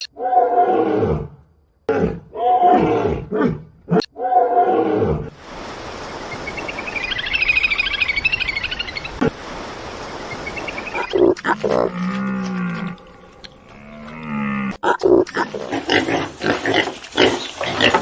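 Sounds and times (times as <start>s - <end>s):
steady hiss: 5.4s - 11.2s, 15.5s - 18.0s
big cat growling and roaring: 11.5s - 18.0s.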